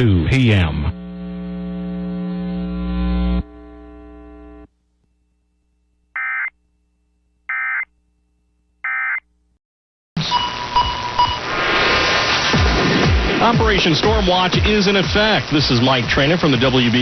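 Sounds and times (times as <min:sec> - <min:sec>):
electrical hum-buzz: 0:00.0 - 0:09.6.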